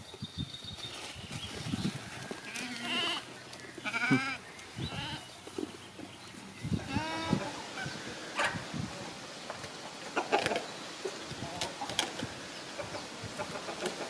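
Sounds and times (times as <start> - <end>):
goats bleating: 2.5 - 5.3.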